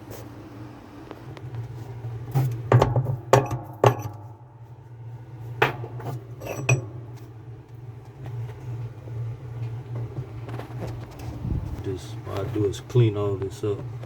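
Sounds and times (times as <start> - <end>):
steady low hum: 0.0 - 14.0
metal tools clinking: 6.4 - 6.9.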